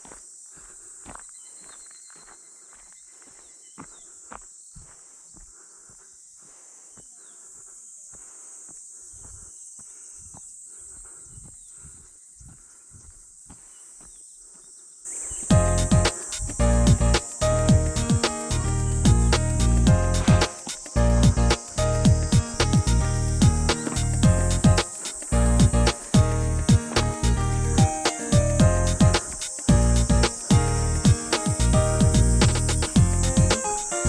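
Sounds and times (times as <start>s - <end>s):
high insect chorus: 0.0s - 34.0s
music: 15.5s - 34.0s
footsteps walking: 19.9s - 27.1s.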